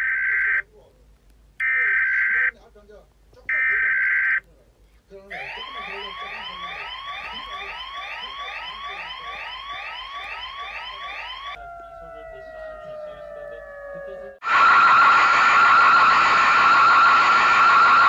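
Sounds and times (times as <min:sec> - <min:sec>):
emergency alert siren: 0:05.3 - 0:18.0.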